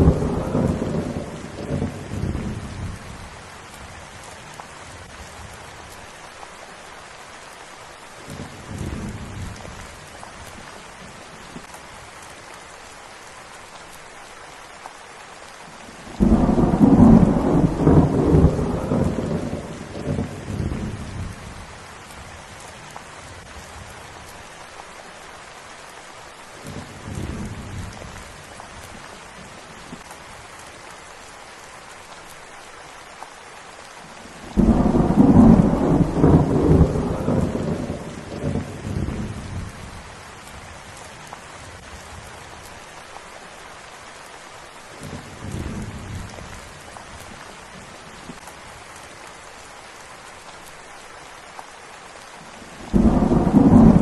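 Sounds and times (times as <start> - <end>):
thunder rumbling: 0.0 - 3.3, 16.0 - 21.7, 34.4 - 40.0, 52.8 - 54.0
steady rain: 0.0 - 54.0.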